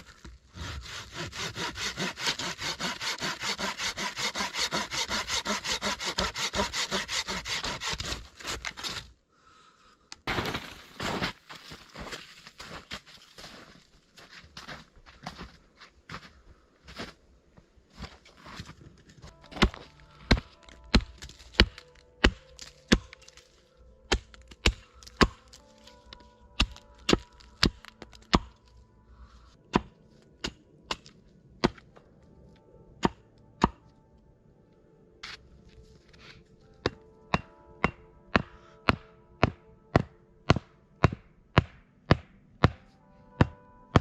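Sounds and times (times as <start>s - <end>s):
axe chopping wood: 19.5s - 23.4s, 24.1s - 25.6s, 26.6s - 28.6s, 29.7s - 31.8s.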